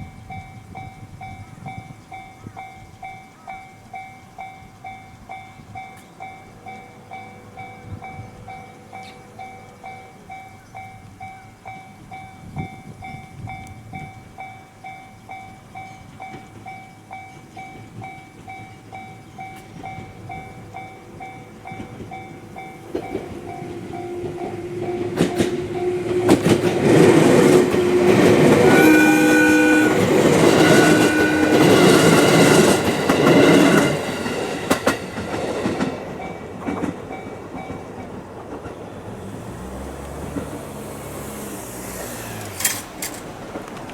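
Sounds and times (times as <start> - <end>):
train passing with wheel clatter: 0.0 - 43.9
train horn blasts: 22.7 - 34.0.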